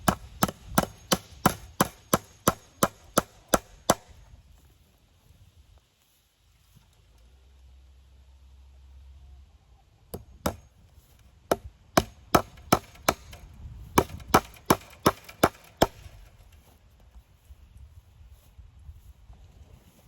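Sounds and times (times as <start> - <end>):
hammer blows on wooden post: 0.0 - 4.2.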